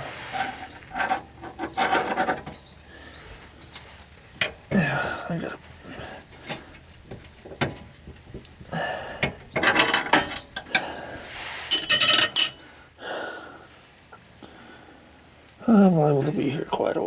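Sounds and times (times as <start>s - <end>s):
metal clinking on metal: 9.2s - 11.0s, 11.7s - 13.0s.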